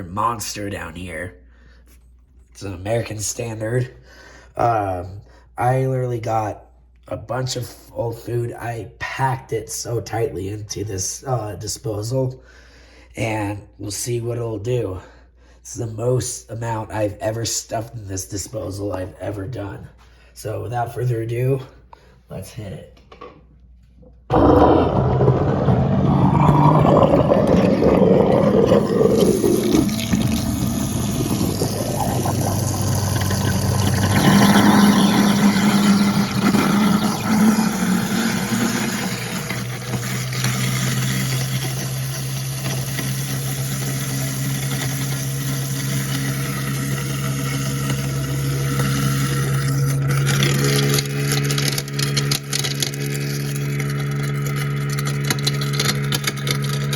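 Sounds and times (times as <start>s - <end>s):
garbage disposal grinding food: 24.2s - 56.9s.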